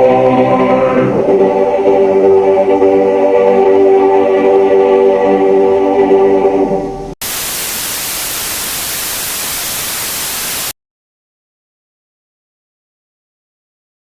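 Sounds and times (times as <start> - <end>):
choir-like chord: 0.0 - 7.0
white noise static: 7.2 - 10.8.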